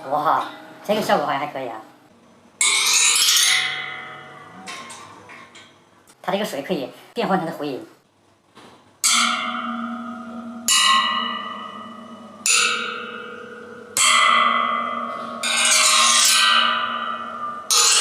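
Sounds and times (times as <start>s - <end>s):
waterphone struck and ringing: 9.0s - 18.0s.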